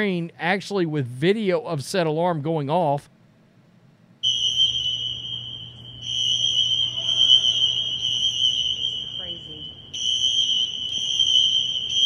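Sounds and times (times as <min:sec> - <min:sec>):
fire alarm high-pitched tone: 0:04.2 - 0:12.0.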